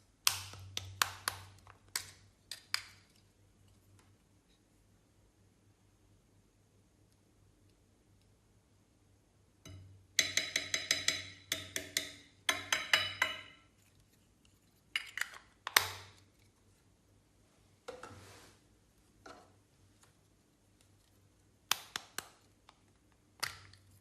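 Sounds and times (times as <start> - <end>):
soft rustling: 16.3 - 21.4.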